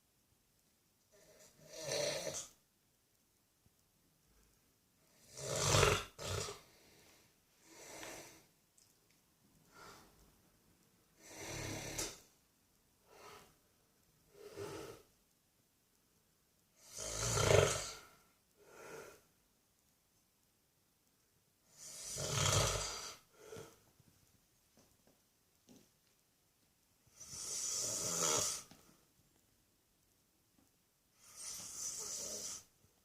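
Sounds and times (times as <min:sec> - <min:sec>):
old man snoring: 0:01.1 - 0:02.6, 0:05.1 - 0:06.9, 0:07.6 - 0:08.5, 0:11.2 - 0:12.3, 0:14.3 - 0:15.1, 0:16.8 - 0:19.2, 0:21.7 - 0:23.8, 0:27.1 - 0:28.7, 0:31.2 - 0:32.7.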